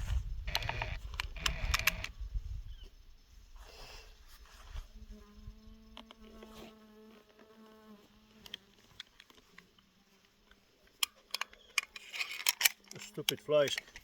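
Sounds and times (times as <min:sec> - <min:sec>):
fly buzzing: 0:04.6 - 0:08.9.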